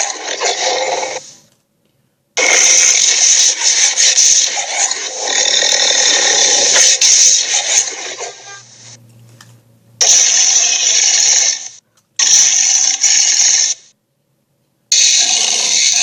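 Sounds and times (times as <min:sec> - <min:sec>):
harsh hissy rasping bursts: 0:02.4 - 0:09.0, 0:10.0 - 0:13.9, 0:14.9 - 0:16.0.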